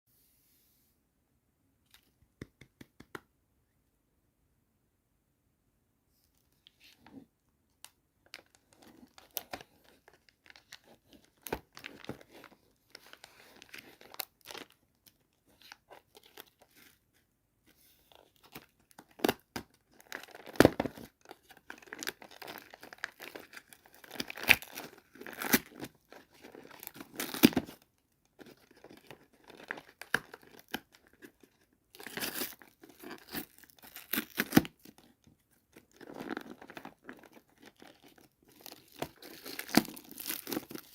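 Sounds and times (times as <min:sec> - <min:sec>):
packaging crinkling and tearing: 0:07.8 - 0:17.0, 0:18.1 - 0:40.9.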